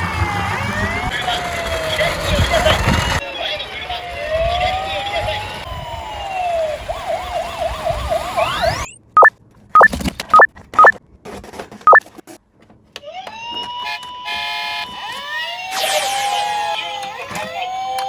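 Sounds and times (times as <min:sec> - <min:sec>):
electronic sound effects: 0:09.2 - 0:10.9
two-note electronic beeps: 0:09.2 - 0:10.9.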